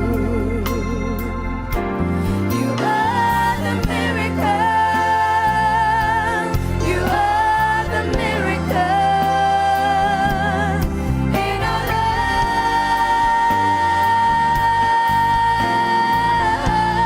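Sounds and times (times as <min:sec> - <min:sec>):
organ accompaniment: 0:00.0 - 0:17.0
women singing gospel: 0:02.6 - 0:17.0.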